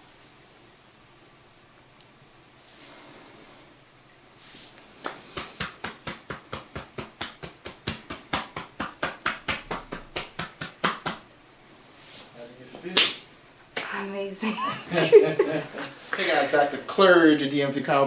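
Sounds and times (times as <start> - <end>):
hands slapping body in massage: 5.0 - 11.2, 12.1 - 13.2.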